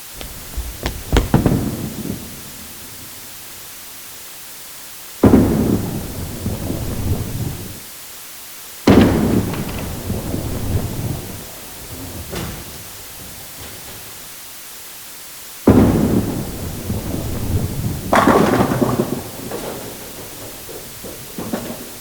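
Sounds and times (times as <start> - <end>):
bowling ball striking pins: 0.0 - 3.3.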